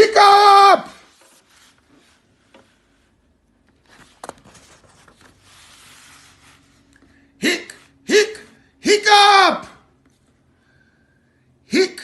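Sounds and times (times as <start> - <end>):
soft rustle: 1.0 - 7.0
faint handling noise: 1.1 - 7.1.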